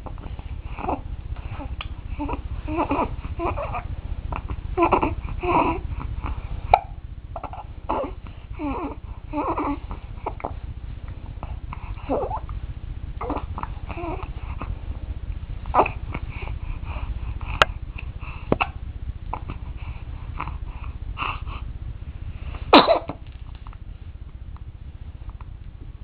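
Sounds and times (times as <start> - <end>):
soft baby vocal sounds: 0.0 - 10.6, 11.3 - 12.6, 13.2 - 14.7, 15.6 - 21.7
baby hiccuping: 22.7 - 23.2.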